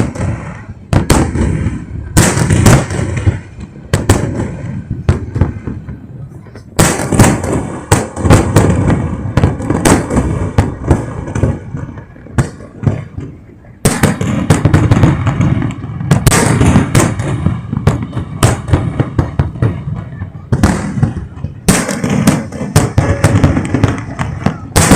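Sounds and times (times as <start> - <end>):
fireworks bursting: 0.0 - 24.9
fireworks crackling: 0.0 - 24.9.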